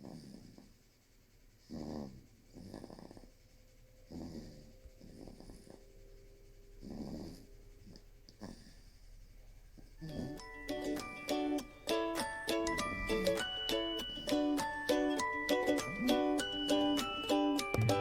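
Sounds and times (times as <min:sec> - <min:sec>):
baby snoring: 0:00.0 - 0:00.7, 0:01.6 - 0:03.4, 0:04.1 - 0:05.9, 0:06.8 - 0:09.0, 0:09.8 - 0:11.2, 0:12.7 - 0:13.6, 0:14.7 - 0:17.8.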